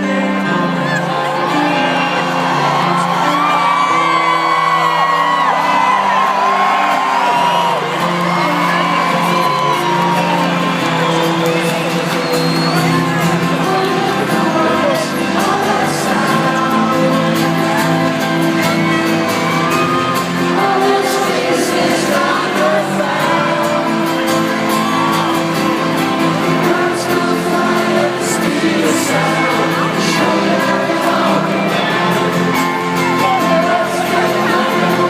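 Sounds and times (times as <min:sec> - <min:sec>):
crowd cheering: 0:00.0 - 0:35.0
live band playing: 0:00.0 - 0:35.0
person singing: 0:00.0 - 0:35.0.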